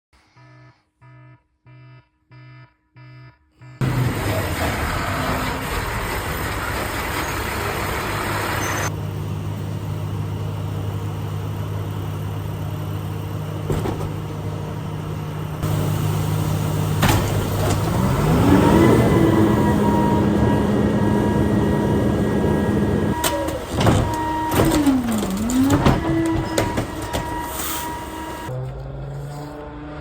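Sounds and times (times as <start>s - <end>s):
alarm beep: 0.2s - 3.8s, 18.6s - 25.0s
loud noise: 3.8s - 8.9s
vehicle engine running: 3.8s - 29.4s.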